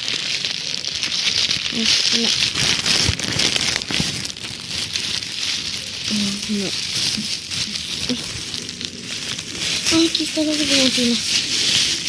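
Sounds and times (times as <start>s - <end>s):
rustling of rummaging: 0.0s - 12.0s
voiced murmur: 5.7s - 12.0s.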